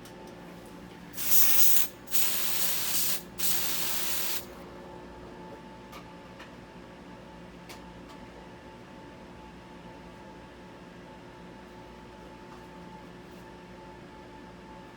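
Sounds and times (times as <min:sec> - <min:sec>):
aerosol can spray hissing: 0:01.2 - 0:04.5.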